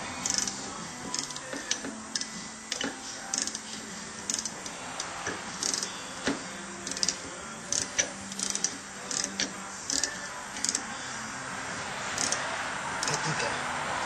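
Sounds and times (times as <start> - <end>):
hand tools clicking: 0.2 - 10.9, 12.2 - 12.4.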